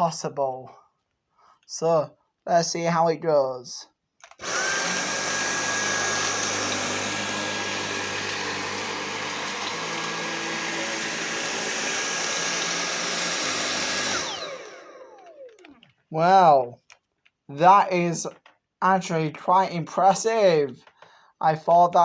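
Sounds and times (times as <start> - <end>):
vacuum cleaner motor whine: 4.4 - 15.8.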